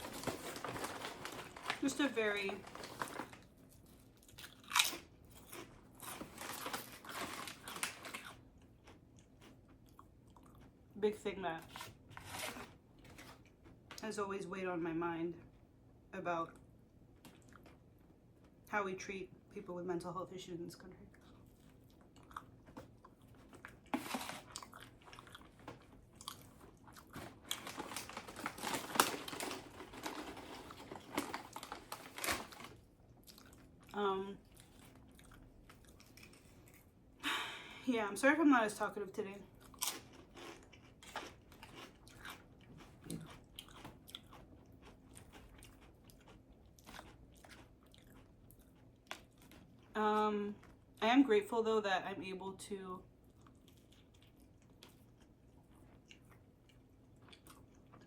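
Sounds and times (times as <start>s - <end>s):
person crunching food: 2.8s - 10.8s, 21.3s - 36.9s, 39.5s - 49.9s, 53.2s - 58.0s.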